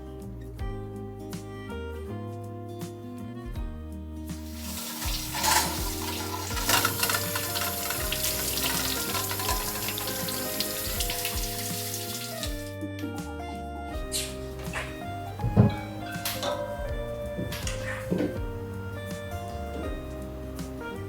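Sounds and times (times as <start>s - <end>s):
background music: 0.0s - 21.0s
water running: 4.4s - 12.8s, 14.0s - 21.0s.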